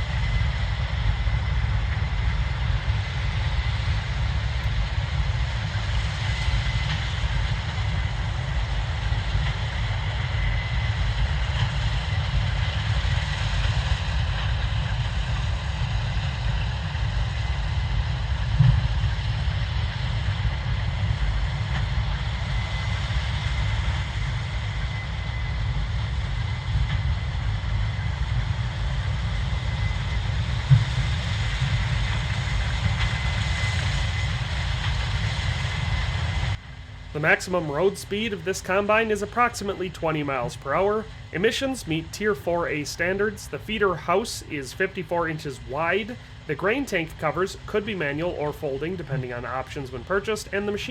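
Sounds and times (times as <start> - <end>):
combine diesel engine drone: 0.0 - 50.9
thin steady machine whine: 0.0 - 50.9.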